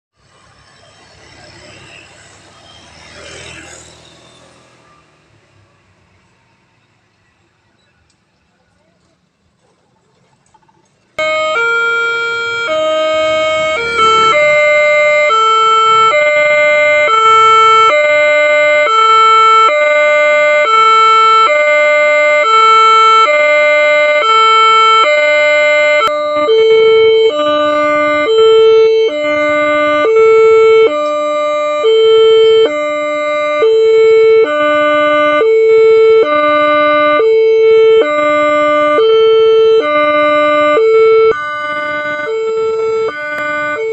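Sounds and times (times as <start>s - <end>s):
level crossing two-tone alarm: 11.2s - 43.9s.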